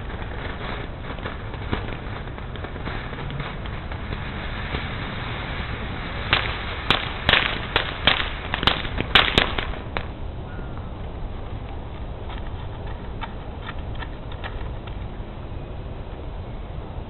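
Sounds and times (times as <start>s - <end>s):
fireworks cracking: 0.0s - 10.2s, 11.8s - 15.1s.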